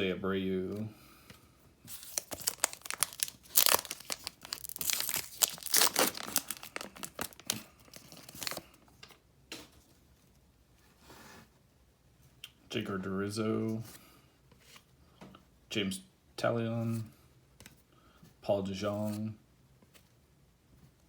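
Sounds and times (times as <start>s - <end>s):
foil wrapper tearing and crinkling: 1.9s - 8.7s.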